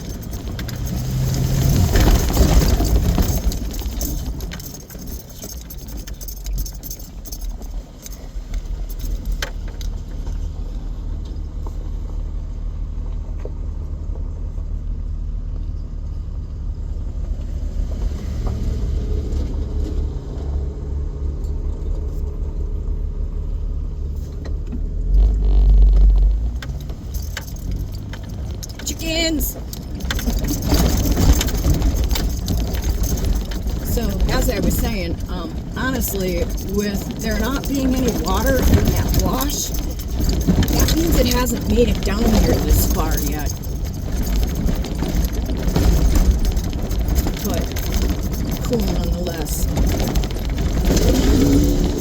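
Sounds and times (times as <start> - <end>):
vehicle engine and road rumble: 0.0 - 52.0
loose rattles and clicks: 24.4 - 52.0.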